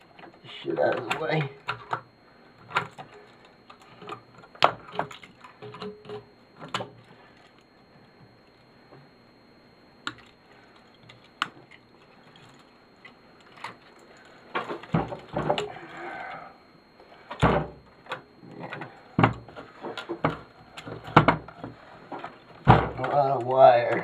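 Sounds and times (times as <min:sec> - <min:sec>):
knocks and rattles of parts: 0:14.5 - 0:15.8, 0:17.3 - 0:23.3.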